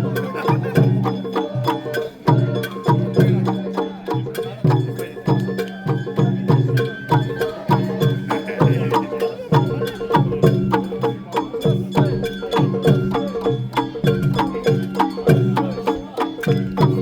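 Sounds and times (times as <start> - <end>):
bamboo flute melody: 0.0 - 17.0
drums: 0.0 - 17.0.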